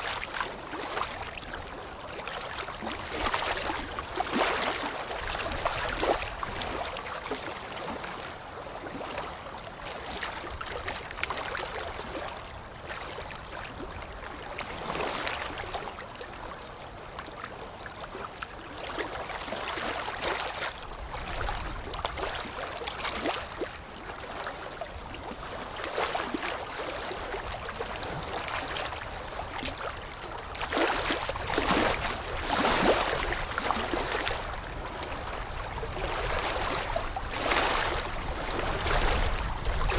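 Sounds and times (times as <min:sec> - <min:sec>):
running water: 0:00.0 - 0:09.4.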